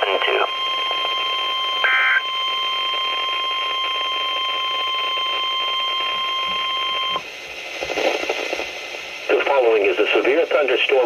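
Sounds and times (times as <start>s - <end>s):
steady piercing alarm tone: 0.4s - 7.3s.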